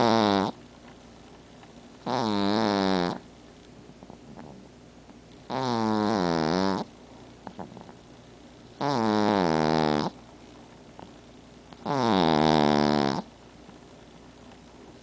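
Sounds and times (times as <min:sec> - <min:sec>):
dog snoring: 0:00.0 - 0:00.6, 0:02.0 - 0:03.3, 0:04.0 - 0:04.7, 0:05.5 - 0:08.0, 0:08.8 - 0:10.2, 0:11.7 - 0:13.3.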